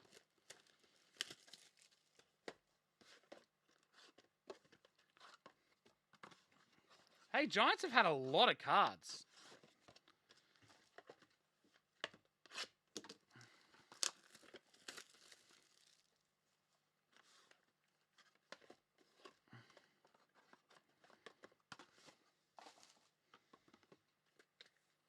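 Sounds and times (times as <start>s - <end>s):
card wrappers tearing and crinkling: 0.5s - 2.1s, 14.0s - 16.0s.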